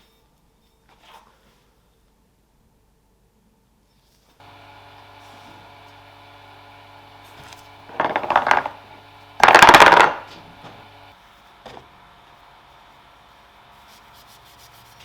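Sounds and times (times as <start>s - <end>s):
small metal parts rattling: 7.9s - 8.8s, 9.4s - 10.4s.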